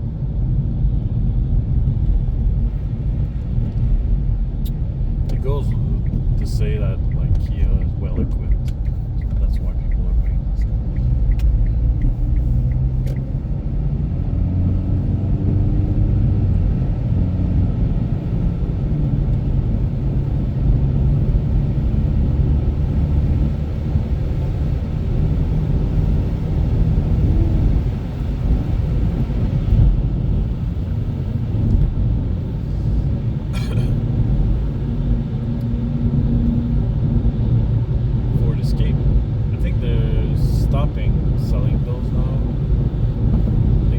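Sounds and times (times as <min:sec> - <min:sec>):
car road and engine rumble: 0:00.0 - 0:43.9
faint engine hum: 0:00.0 - 0:43.9.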